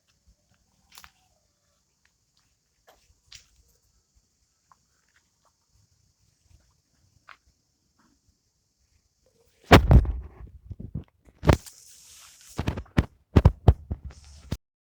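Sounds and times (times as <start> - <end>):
sharp knocks and thumps: 9.7 - 11.6, 12.6 - 14.6
brief rustling: 9.7 - 14.6.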